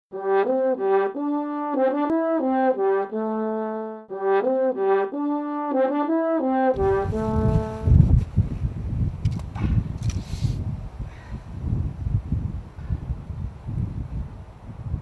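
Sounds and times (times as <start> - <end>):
brass melody: 0.1 - 8.2
wind noise on microphone: 6.7 - 15.0.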